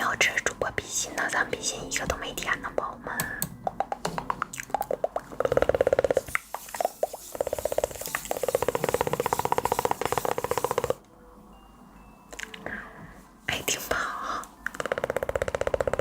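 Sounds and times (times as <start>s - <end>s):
rapid hollow tapping: 3.4s - 11.0s.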